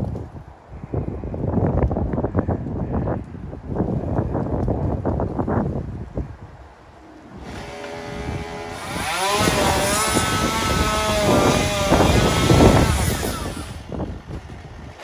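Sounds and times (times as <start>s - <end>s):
engine revving: 7.3s - 13.9s.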